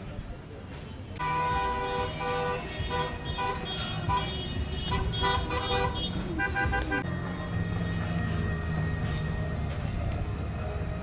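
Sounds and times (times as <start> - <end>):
car horns honking: 1.2 - 8.2.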